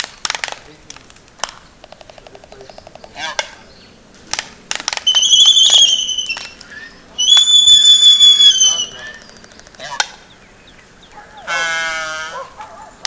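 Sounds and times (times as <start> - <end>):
albatross bill clacks: 0.0 - 7.5, 9.1 - 10.3
albatross drawn-out calls: 1.8 - 3.6, 4.9 - 10.3, 11.2 - 12.7.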